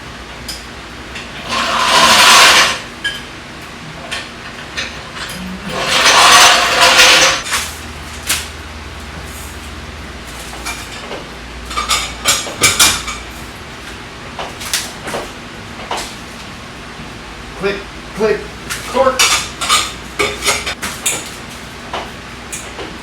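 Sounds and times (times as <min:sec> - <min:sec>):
loud scraping rush: 0:01.4 - 0:02.9, 0:05.6 - 0:07.4.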